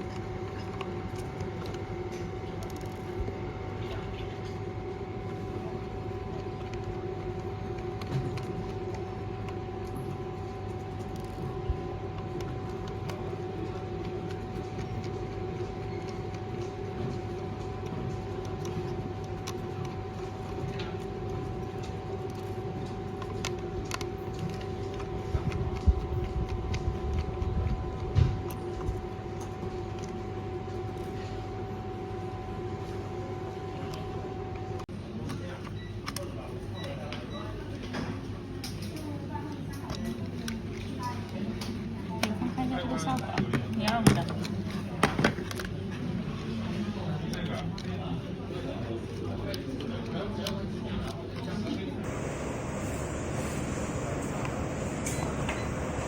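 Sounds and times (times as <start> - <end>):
steady machine hum: 52.0 - 56.0.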